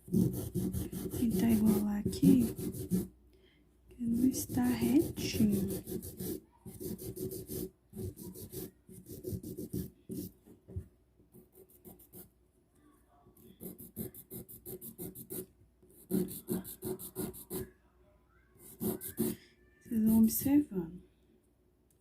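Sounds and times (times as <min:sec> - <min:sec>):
nail file rasping on fingernail: 0:00.0 - 0:03.1, 0:04.1 - 0:10.3, 0:16.1 - 0:17.6, 0:18.7 - 0:19.4.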